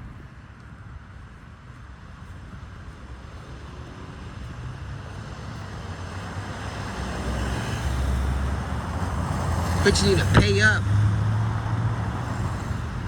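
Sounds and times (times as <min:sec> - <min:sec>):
motor vehicle approaching: 0:03.0 - 0:13.0.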